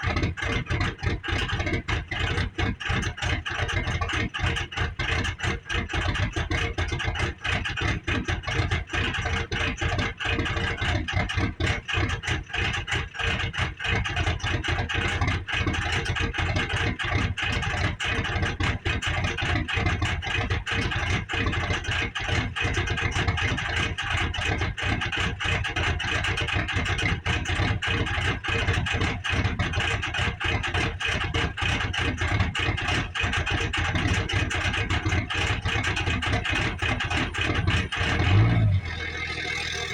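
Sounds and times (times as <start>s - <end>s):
diesel engine idling: 23.3s - 39.9s.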